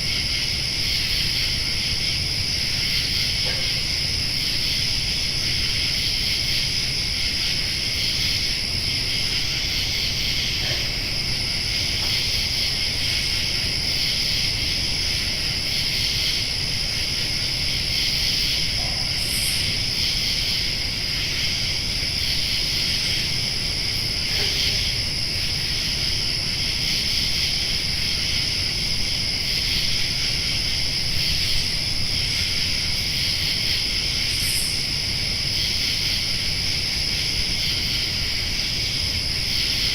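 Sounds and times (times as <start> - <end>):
crickets and insects trilling: 0.0 - 39.9.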